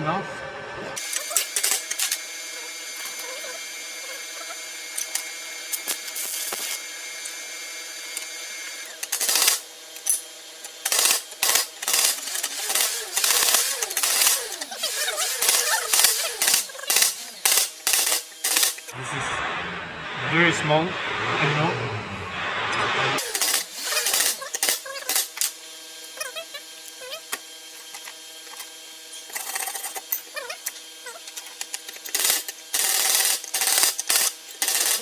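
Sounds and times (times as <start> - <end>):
steady high-toned hum: 11.9 - 23.7.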